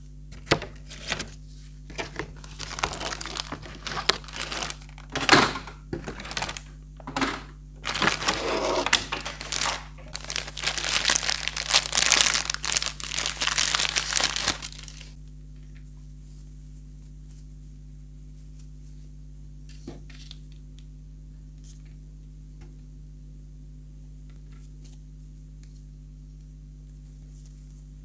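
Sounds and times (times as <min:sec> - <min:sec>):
toy packaging crinkling: 0:01.9 - 0:15.2.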